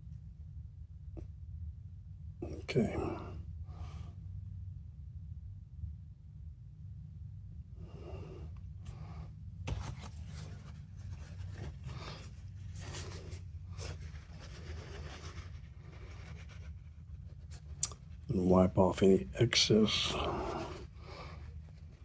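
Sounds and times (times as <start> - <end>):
low steady hum: 0.0 - 22.0
scraping and rubbing strokes: 9.7 - 18.2.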